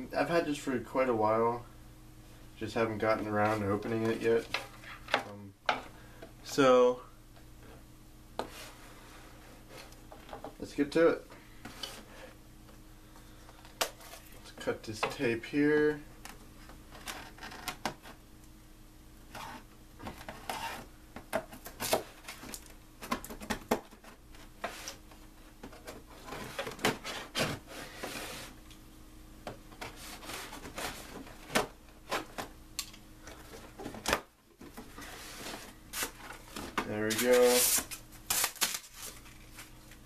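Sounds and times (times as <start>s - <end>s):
cutting tape on cardboard box: 37.2s - 38.9s.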